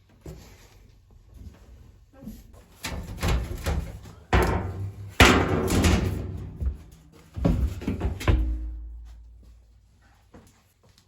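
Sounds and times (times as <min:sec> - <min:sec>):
sheet metal panels clanking: 0:02.8 - 0:07.1.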